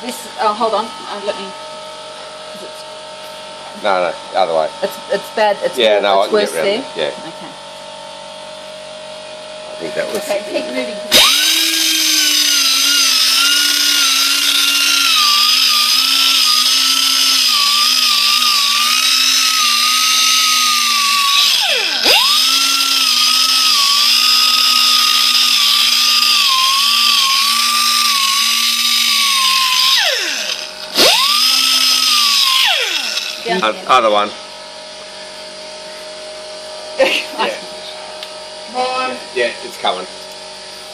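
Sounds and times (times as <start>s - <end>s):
air-powered sander whining: 9.8s - 33.9s.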